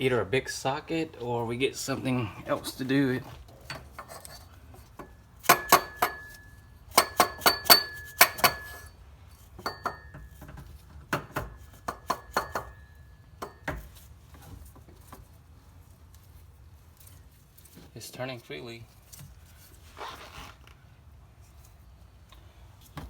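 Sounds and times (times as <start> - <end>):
hammer tapping metal: 5.0 - 8.9, 9.6 - 10.5, 11.1 - 13.9.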